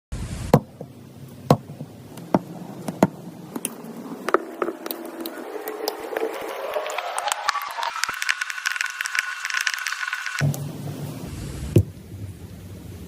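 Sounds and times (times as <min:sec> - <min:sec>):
tone rising in steps: 0:02.2 - 0:11.2.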